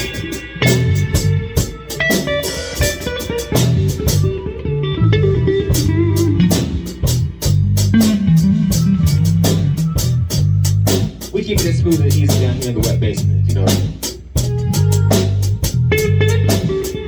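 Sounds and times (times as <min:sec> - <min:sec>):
drum kit and cymbals: 0:00.0 - 0:04.4, 0:05.7 - 0:17.0
electric guitar: 0:00.0 - 0:11.2, 0:13.6 - 0:17.0
bass guitar line: 0:00.0 - 0:17.0.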